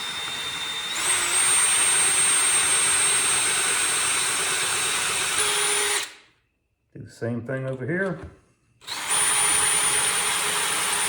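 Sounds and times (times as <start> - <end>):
electric drill whining: 0.0 - 6.2, 8.8 - 11.0.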